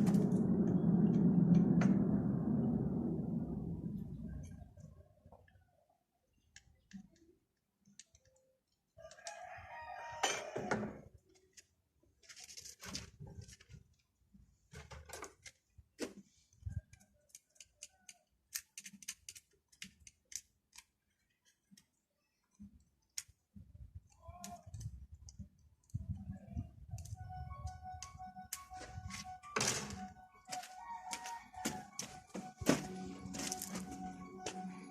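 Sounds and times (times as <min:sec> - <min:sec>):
rooster crowing: 0:09.1 - 0:11.0, 0:30.6 - 0:32.2.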